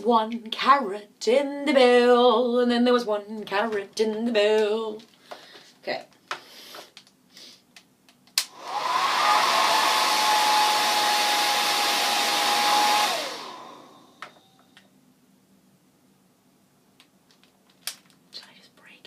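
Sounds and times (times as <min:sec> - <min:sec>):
hair dryer switch click: 0:08.3 - 0:08.9
hair dryer motor whine and air rush: 0:08.4 - 0:14.6.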